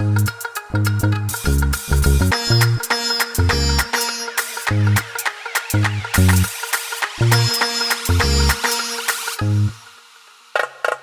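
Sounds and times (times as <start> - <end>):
deep bass notes: 0.0 - 3.9, 4.7 - 5.1, 5.7 - 6.5, 7.2 - 8.6, 9.4 - 9.8
sharp percussion hits: 1.4 - 10.0
sustained pitched tones: 2.2 - 10.0.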